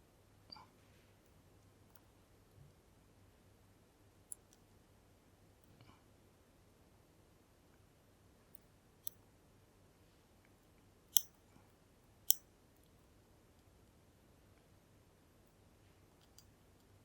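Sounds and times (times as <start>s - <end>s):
lock pick clicking metallically: 11.2s - 11.4s.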